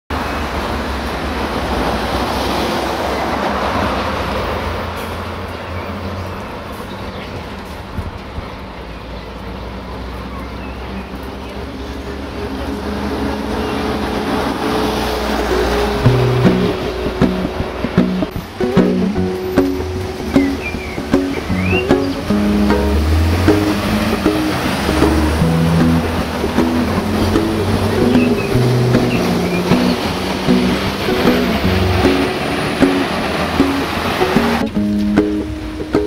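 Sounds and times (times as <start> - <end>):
train running on rails: 0.1 - 36.0
rail clicks: 14.4 - 36.0
guitar music: 15.2 - 36.0.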